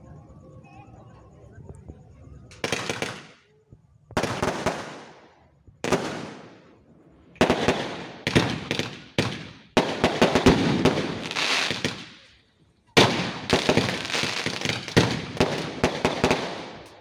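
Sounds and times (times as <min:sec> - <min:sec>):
fireworks crackling bangs: 0:02.5 - 0:03.5, 0:04.1 - 0:06.7, 0:07.3 - 0:12.4, 0:13.0 - 0:17.0.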